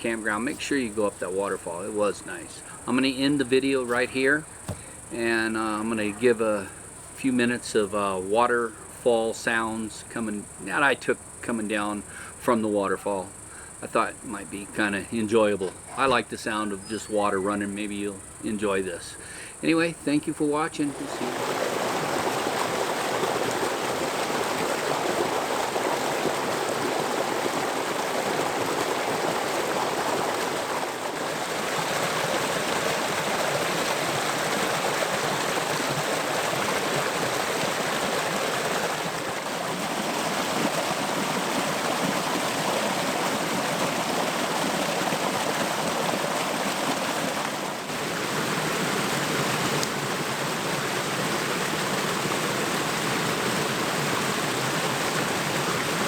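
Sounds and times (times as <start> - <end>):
waterfall rushing: 20.6 - 56.0.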